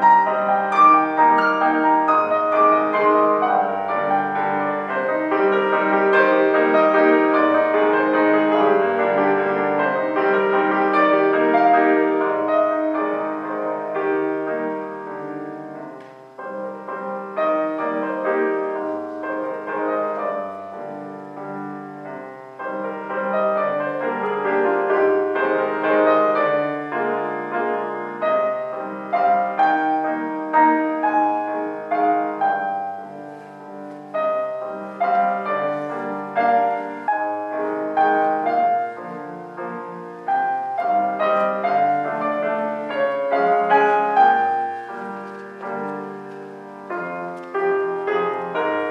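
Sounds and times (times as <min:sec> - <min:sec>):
solo piano music: 0:00.0 - 0:48.9.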